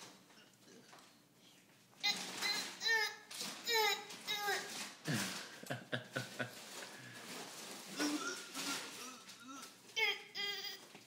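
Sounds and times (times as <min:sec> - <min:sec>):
child making funny vocal noises: 0:02.0 - 0:04.7, 0:08.0 - 0:10.9.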